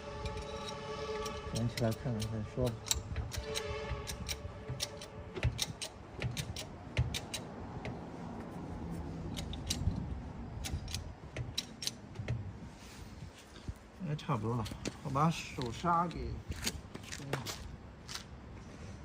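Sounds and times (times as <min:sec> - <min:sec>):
jack clicking and clanking: 0:00.2 - 0:08.0, 0:09.3 - 0:12.4.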